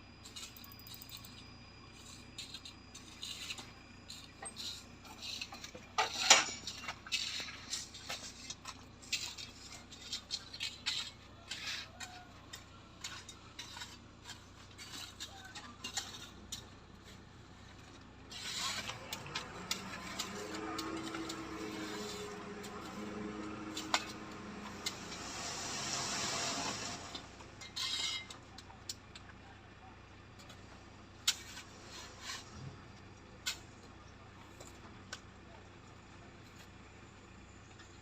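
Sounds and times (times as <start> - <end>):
heavy vehicle engine droning: 0.0 - 38.0.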